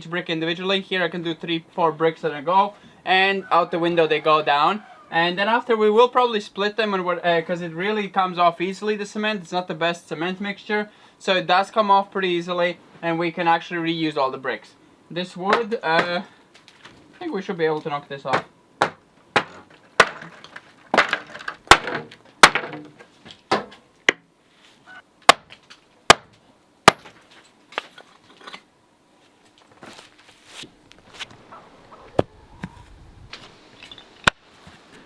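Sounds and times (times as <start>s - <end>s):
knocks on wood and brick: 15.5s - 16.2s, 18.3s - 24.2s, 25.3s - 27.2s.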